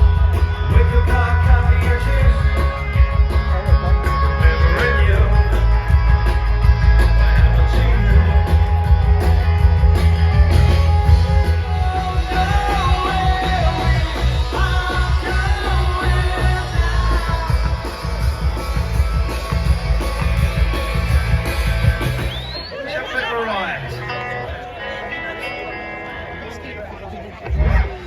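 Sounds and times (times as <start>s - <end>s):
person singing: 0.0s - 6.3s, 11.0s - 19.3s
heavy bass line: 0.0s - 22.6s, 27.5s - 28.0s
rock guitar: 0.0s - 23.1s, 23.8s - 28.0s.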